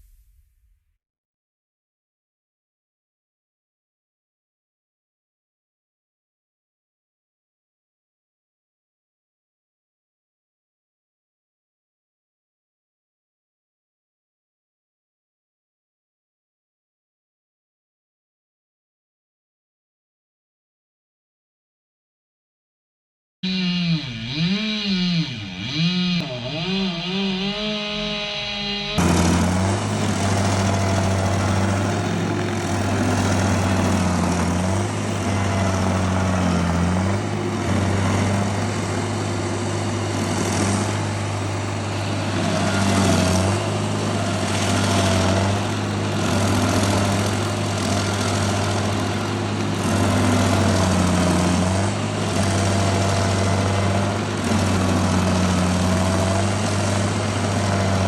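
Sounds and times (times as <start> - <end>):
stump grinder petrol engine: 23.4 - 58.0.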